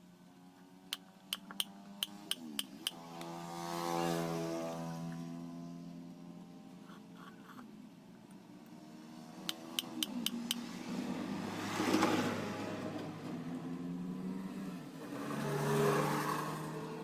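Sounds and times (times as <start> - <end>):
sharp metallic clicks: 0.9 - 3.3, 9.5 - 10.6.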